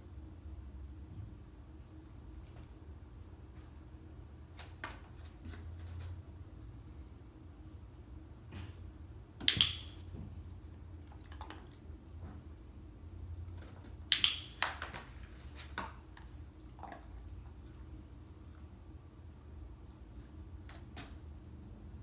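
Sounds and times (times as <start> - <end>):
training clicker clicking: 9.5 - 10.0, 14.1 - 14.6.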